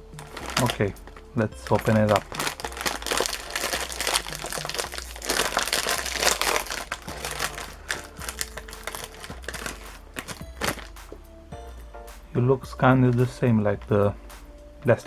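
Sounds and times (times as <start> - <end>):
snack packet crinkling: 0.2 - 11.0.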